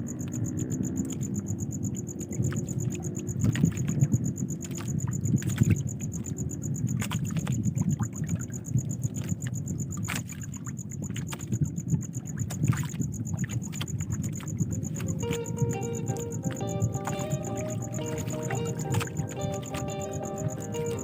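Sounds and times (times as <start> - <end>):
water lapping against boat hull: 1.9 - 21.0
knocks and splashes: 2.4 - 6.3, 6.9 - 21.0.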